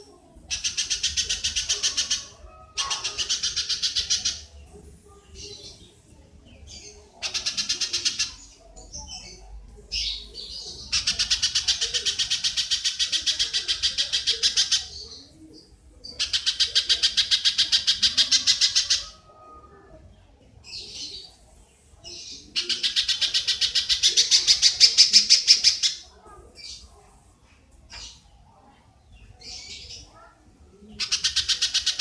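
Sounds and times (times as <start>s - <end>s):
small animal chattering call: 0.5s - 4.5s, 6.8s - 8.6s, 9.9s - 15.2s, 16.1s - 19.3s, 22.1s - 26.8s, 29.4s - 32.0s.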